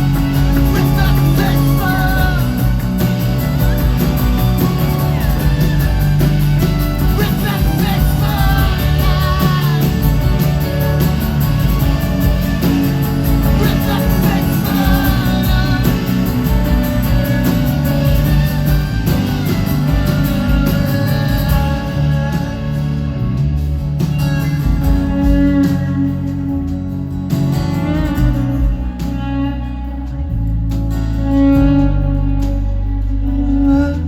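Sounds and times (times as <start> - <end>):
wavering lead melody: 0.0 - 23.6
live rock band playing: 0.0 - 34.0.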